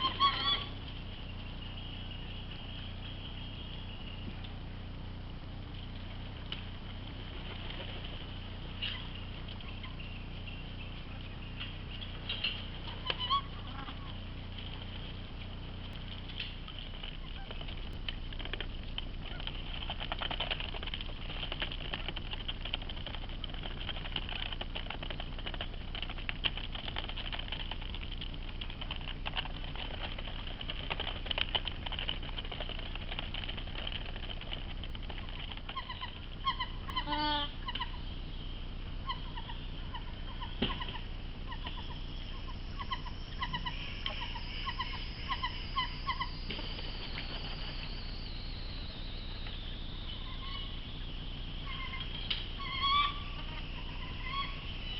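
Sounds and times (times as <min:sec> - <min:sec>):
ducks calling: 0:00.0 - 0:04.7, 0:05.8 - 0:25.5, 0:28.2 - 0:54.9
steady high hiss: 0:41.0 - 0:54.9.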